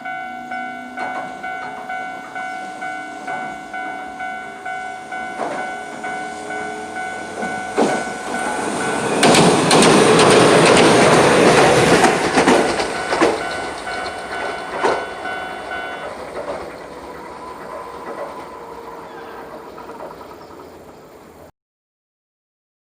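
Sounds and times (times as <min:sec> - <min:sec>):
crossing warning bell ringing: 0:00.0 - 0:21.3
tram passing: 0:00.0 - 0:21.5
wheel clicks over rail joints: 0:08.8 - 0:20.7.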